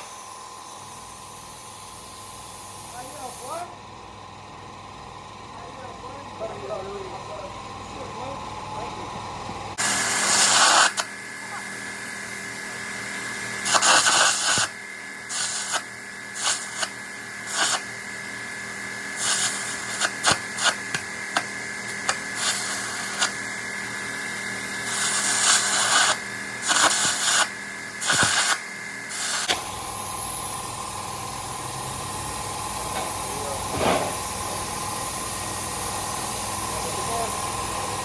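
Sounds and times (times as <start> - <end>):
steady hiss: 9.8 - 11.1, 13.6 - 16.9, 17.5 - 17.9.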